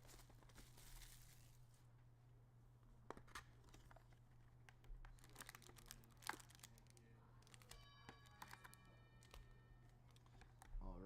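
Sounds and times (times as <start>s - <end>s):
packaging crinkling and tearing: 5.0s - 10.7s.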